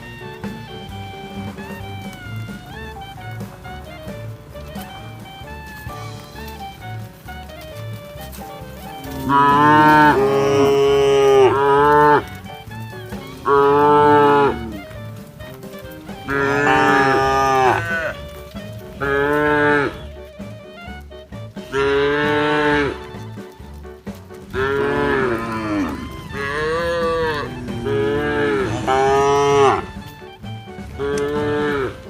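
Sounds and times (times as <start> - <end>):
music with low beat: 0.0 - 32.0
cow mooing: 8.5 - 20.2, 21.7 - 23.2, 24.5 - 30.1, 30.9 - 32.0.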